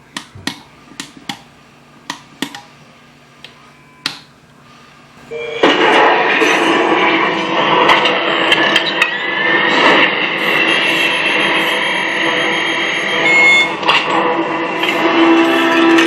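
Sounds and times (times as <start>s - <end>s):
rising whine: 5.3s - 16.0s
mechanical electronic noise: 8.0s - 16.0s
steady high tones: 10.4s - 13.8s.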